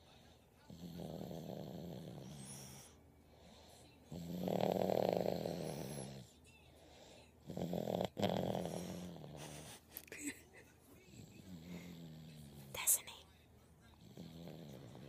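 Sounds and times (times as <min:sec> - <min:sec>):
heavy snoring: 0:00.6 - 0:03.0, 0:04.1 - 0:06.3, 0:07.4 - 0:09.8, 0:11.1 - 0:12.8, 0:14.0 - 0:15.0.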